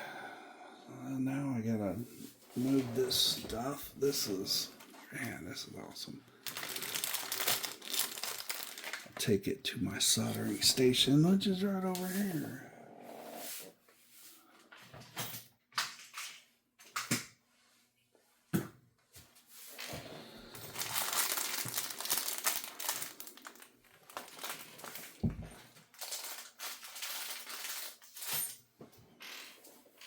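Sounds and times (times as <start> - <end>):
packaging crinkling and rustling: 6.3 - 9.4, 19.7 - 28.4.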